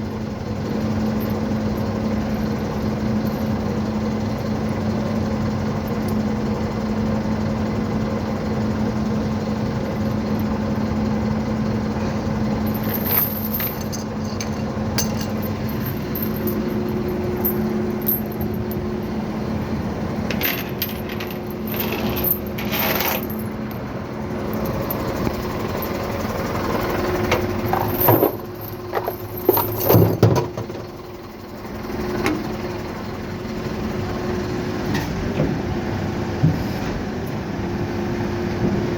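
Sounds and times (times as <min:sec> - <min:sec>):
truck engine hum: 0:00.0 - 0:38.9
chains clinking and rattling: 0:12.6 - 0:19.3, 0:20.2 - 0:26.4, 0:27.5 - 0:30.3
metal clanks: 0:12.7 - 0:19.2, 0:20.3 - 0:23.5, 0:27.3 - 0:30.8.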